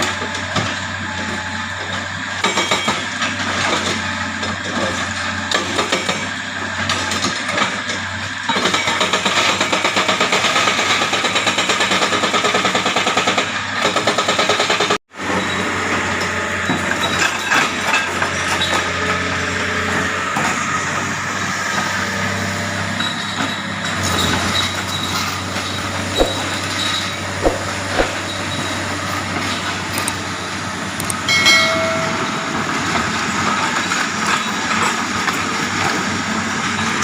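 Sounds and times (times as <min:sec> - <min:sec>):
hydraulic breaker hammering rock: 0:00.0 - 0:20.6, 0:23.0 - 0:36.1
diesel engine running: 0:15.2 - 0:37.0
scattered knocks: 0:26.1 - 0:28.9.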